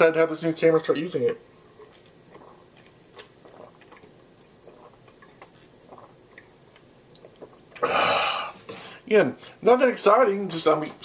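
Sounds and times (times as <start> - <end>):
person gulping and swallowing: 1.6 - 8.9.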